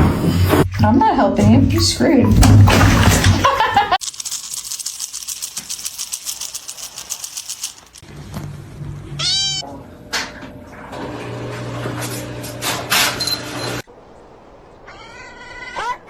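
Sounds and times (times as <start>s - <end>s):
fast even ticking: 4.0s - 8.0s
cat meowing: 9.2s - 9.6s.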